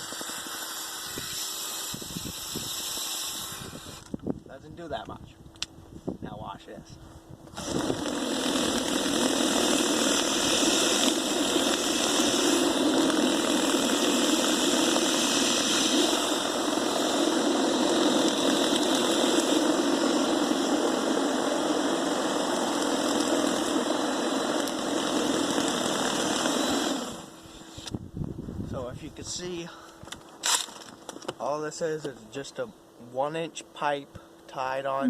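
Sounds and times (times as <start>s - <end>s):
electric drill motor running: 0.0s - 4.3s, 7.5s - 27.9s, 30.4s - 31.0s
high whine: 0.0s - 30.8s.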